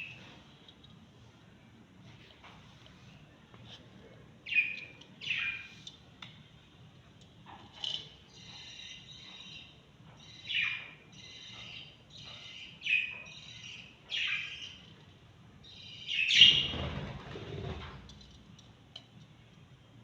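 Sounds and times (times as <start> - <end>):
harsh bird calls: 8.2 - 14.9, 15.6 - 17.0
baby birds chirping: 8.3 - 14.8.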